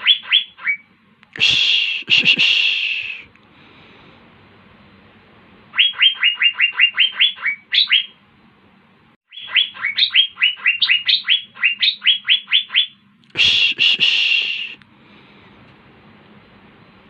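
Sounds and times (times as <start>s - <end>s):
bird singing rapid downward notes: 5.8s - 8.2s, 9.3s - 13.0s.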